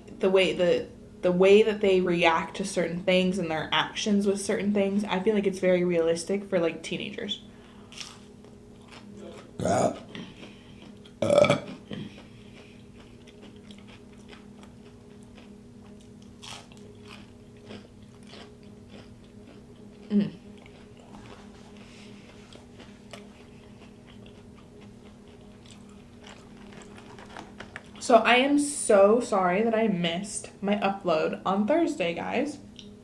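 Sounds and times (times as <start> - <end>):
faint steady hum: 0.0 - 33.0
person chewing food: 7.9 - 28.0.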